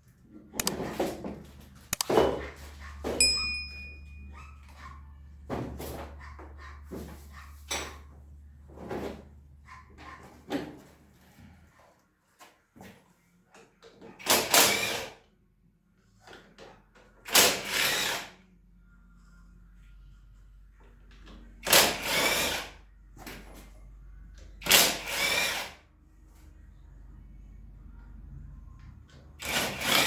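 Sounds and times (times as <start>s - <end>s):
power drill running: 17.5s - 18.3s, 21.7s - 22.7s, 24.7s - 25.8s, 29.4s - 30.0s.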